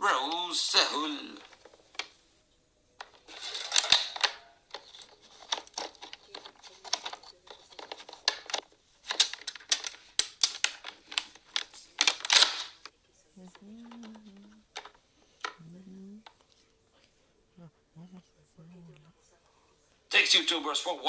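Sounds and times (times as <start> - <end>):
plastic parts clicking and snapping: 0.2 - 2.2, 3.0 - 12.9, 13.5 - 16.5
scraping rustles: 3.0 - 17.0.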